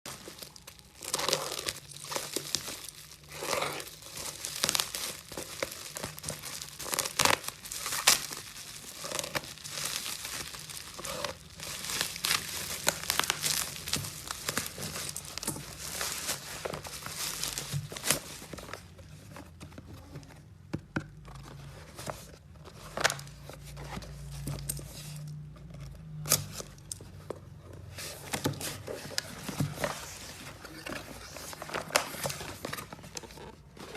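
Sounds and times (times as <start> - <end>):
plastic packaging crinkling: 0.1 - 19.0.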